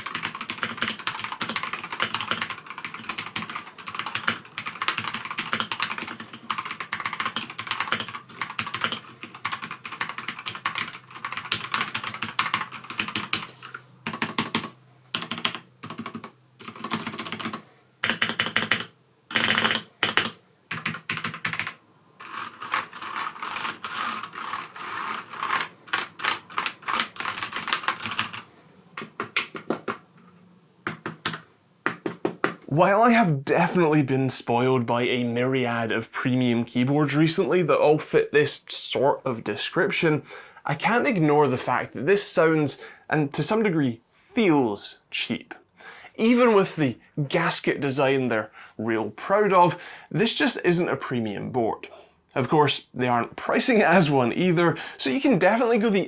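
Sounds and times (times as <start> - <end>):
mechanical keyboard typing: 0.0 - 30.0, 30.9 - 32.6.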